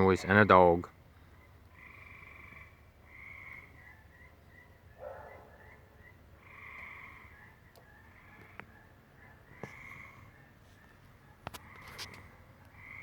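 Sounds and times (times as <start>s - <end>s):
animal chirping calls: 3.2s - 11.0s.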